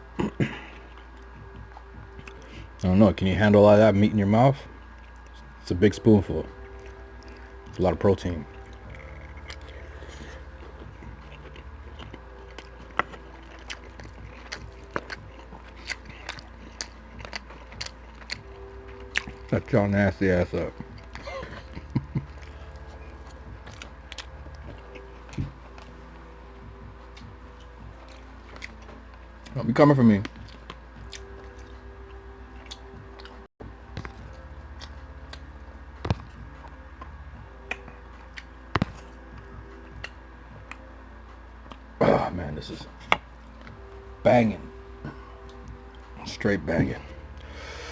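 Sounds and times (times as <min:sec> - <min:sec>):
close-up chewing: 0:00.0 - 0:03.1, 0:04.4 - 0:47.9.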